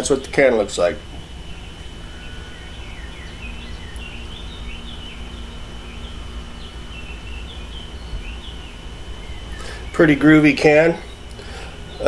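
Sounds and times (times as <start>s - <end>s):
faint high whine: 0.0s - 12.0s
steady low rumble: 0.0s - 12.0s
bird chirping: 1.0s - 12.0s.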